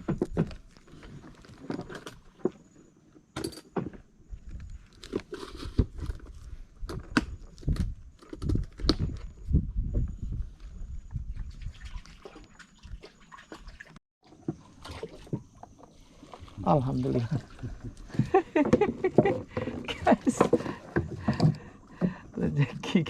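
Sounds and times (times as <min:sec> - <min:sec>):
knocks and clicks in a boat: 0:17.5 - 0:23.0.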